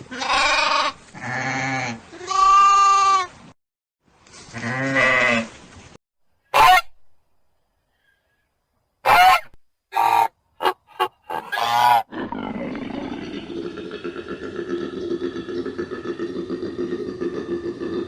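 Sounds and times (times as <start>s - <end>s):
low continuous animal sound: 0.0s - 3.3s, 7.6s - 18.0s
loud animal calls: 9.0s - 18.0s.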